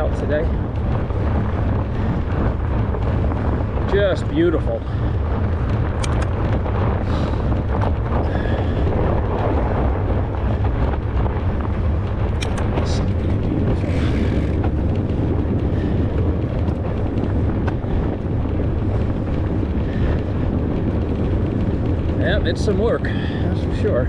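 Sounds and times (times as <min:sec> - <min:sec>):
bike riding through snow: 0:00.0 - 0:24.0
wind rumble on microphone: 0:00.0 - 0:24.0
sharp clicks: 0:05.9 - 0:06.6, 0:12.3 - 0:12.9.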